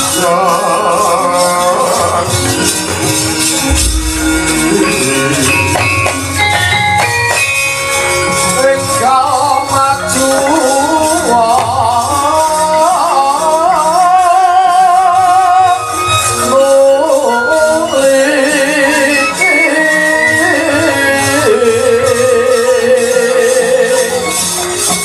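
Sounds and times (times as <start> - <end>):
gamelan ensemble playing: 2.5 - 8.6.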